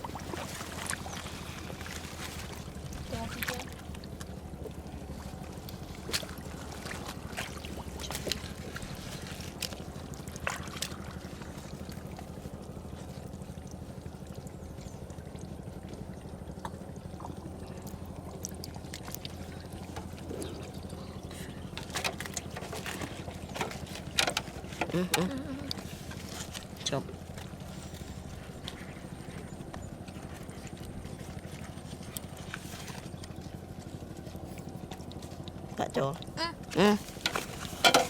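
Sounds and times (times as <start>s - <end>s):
water pouring and splashing: 0.0s - 20.9s, 30.3s - 38.0s
low motor hum: 0.0s - 38.0s.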